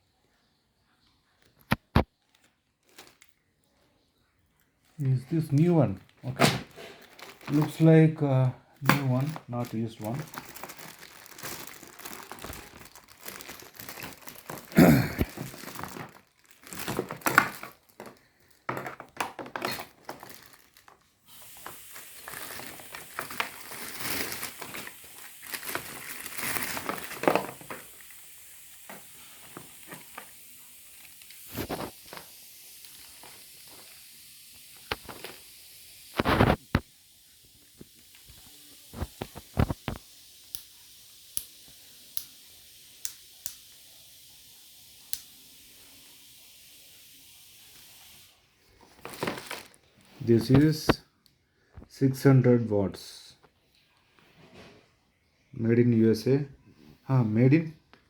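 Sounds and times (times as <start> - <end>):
packaging crinkling: 1.6 - 3.5, 4.8 - 36.9, 37.8 - 40.0, 48.7 - 50.9.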